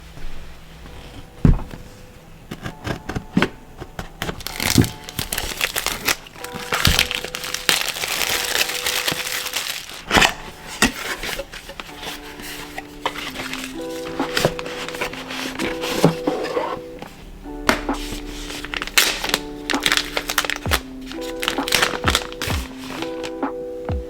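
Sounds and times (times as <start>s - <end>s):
packaging crinkling and rustling: 0.9s - 23.4s
box knocks and clacks: 2.5s - 7.8s, 10.1s - 16.7s.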